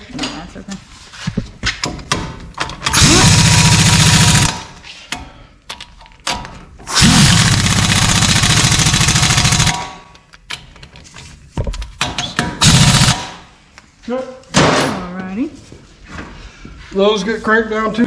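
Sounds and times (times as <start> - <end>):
impact wrench hammering bolts: 1.8 - 10.8, 12.0 - 13.5.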